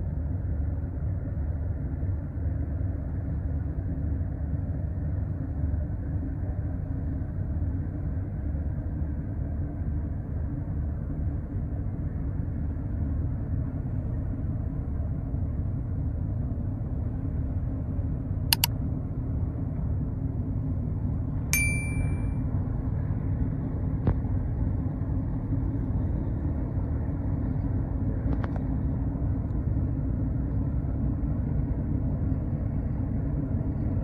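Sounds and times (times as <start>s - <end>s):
metallic ding: 21.6s - 22.3s.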